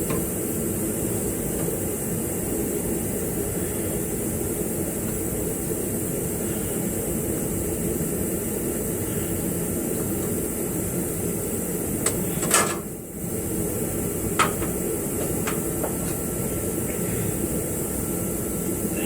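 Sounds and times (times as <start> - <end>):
sharp metal knocks and clicks: 14.4 - 16.2.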